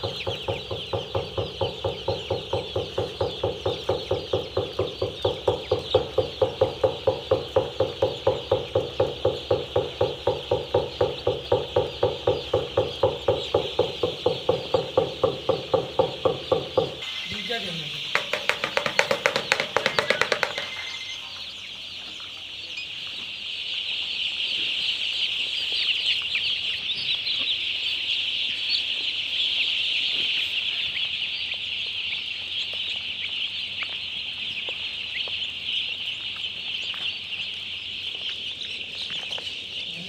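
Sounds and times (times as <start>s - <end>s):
chicks peeping: 0.0s - 40.0s
rapid rattling: 18.1s - 21.0s.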